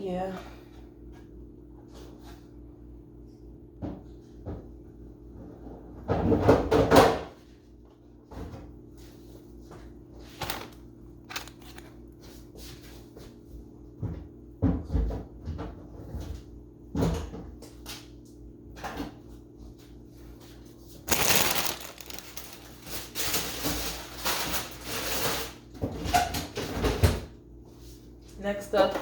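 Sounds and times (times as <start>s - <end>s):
items knocking in a refrigerator: 5.9s - 7.4s, 13.9s - 17.6s, 21.1s - 27.4s
packaging rustling and crinkling: 10.3s - 12.1s, 21.0s - 25.4s.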